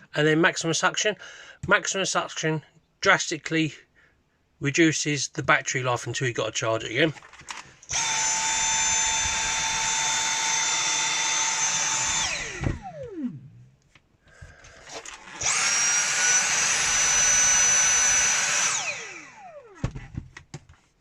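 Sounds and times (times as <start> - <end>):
vacuum cleaner motor whining: 7.9 - 13.6, 14.5 - 20.0.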